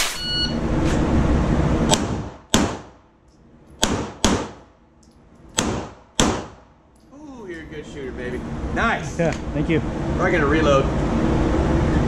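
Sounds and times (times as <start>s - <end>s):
loud rushing noise: 0.0s - 3.0s
handgun shots: 1.9s - 3.0s, 3.8s - 4.7s, 5.5s - 6.6s.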